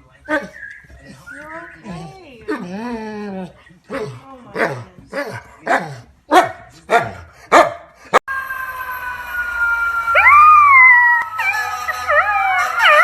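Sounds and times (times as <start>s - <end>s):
dog barking: 5.6s - 8.0s
siren-like wail: 8.3s - 13.0s.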